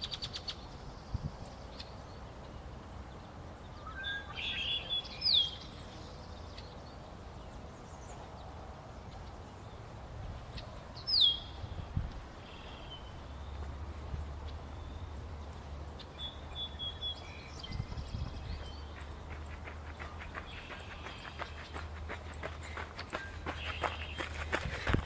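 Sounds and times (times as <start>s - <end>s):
bird chatter: 16.1s - 24.6s.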